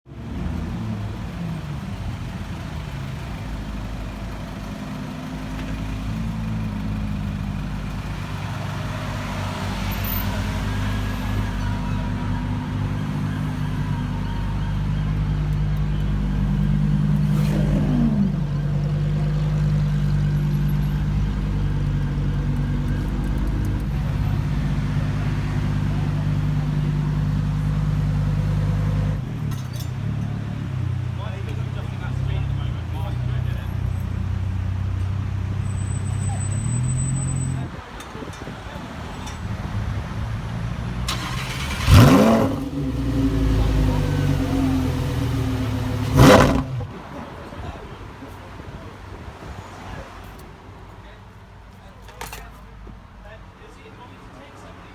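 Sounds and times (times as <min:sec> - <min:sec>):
car engine running: 0:00.2 - 0:33.7, 0:41.1 - 0:47.0.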